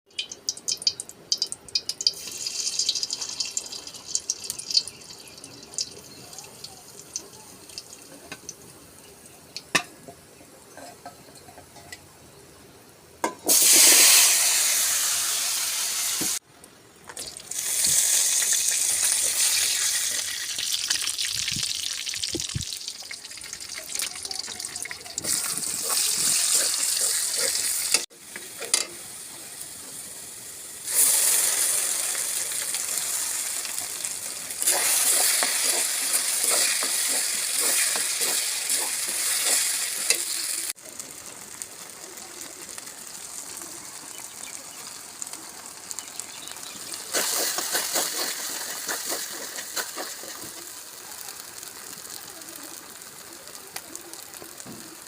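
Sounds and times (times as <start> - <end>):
loud rushing hiss: 13.5 - 16.4.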